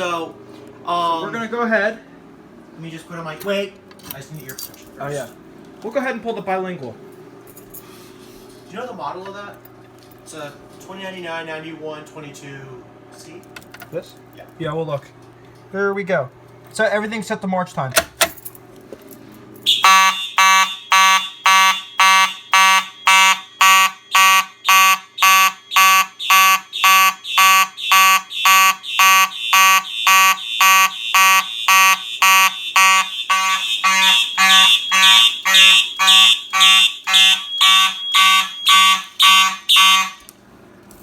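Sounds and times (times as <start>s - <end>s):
fire alarm horn buzzing: 19.6s - 40.4s
shrill alarm tone: 19.7s - 40.3s.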